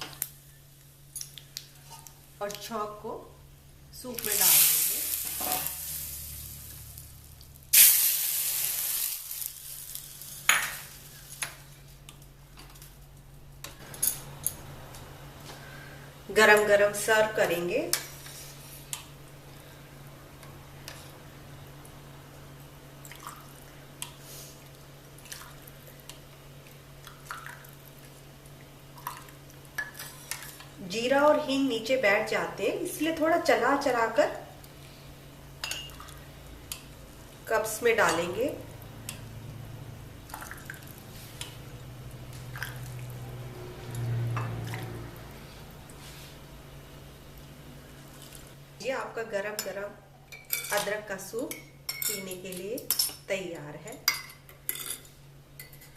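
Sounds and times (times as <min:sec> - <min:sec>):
steady low hum: 0:00.0 - 0:51.9
soup dripping and clinking: 0:35.6 - 0:36.8
liquid splashing: 0:40.3 - 0:41.2, 0:42.4 - 0:43.4.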